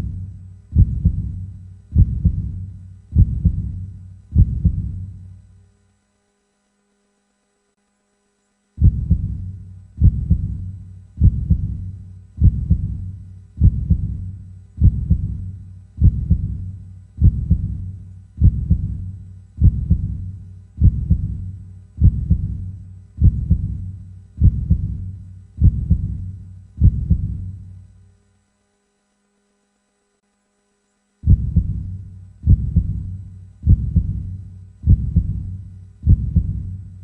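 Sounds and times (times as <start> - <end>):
heartbeat double thump: 0.0 - 5.1, 8.8 - 27.6, 31.2 - 36.8.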